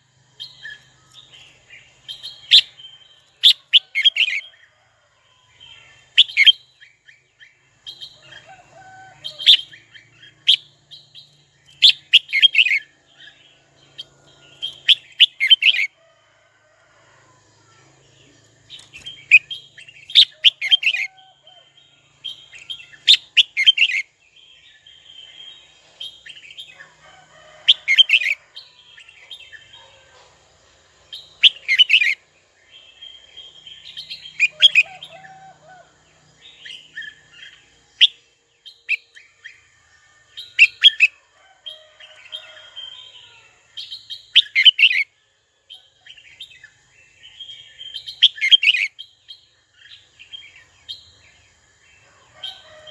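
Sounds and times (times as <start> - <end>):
bird whistled song: 2.1 - 4.4, 10.4 - 12.9.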